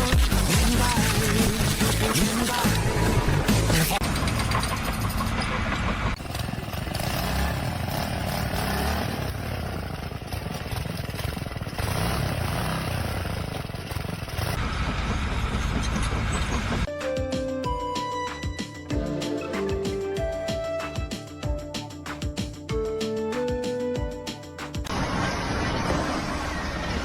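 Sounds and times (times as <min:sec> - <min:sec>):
music: 0:00.0 - 0:04.0, 0:16.9 - 0:24.9
loud machine noise: 0:00.4 - 0:16.9, 0:24.9 - 0:27.0.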